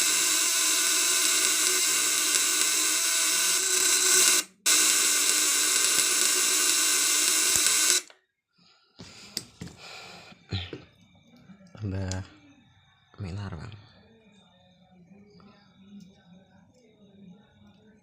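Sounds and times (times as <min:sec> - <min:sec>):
transformer buzzing loudly: 0:00.0 - 0:08.1.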